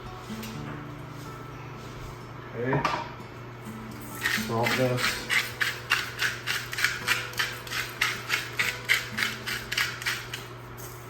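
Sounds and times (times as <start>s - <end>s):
salt grinder grating: 4.2s - 10.5s.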